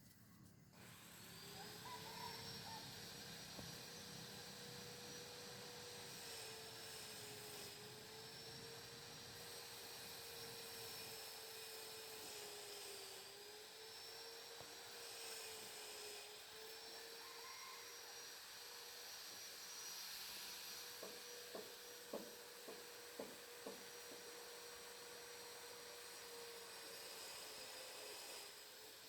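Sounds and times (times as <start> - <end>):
hiss: 19.2 - 24.2.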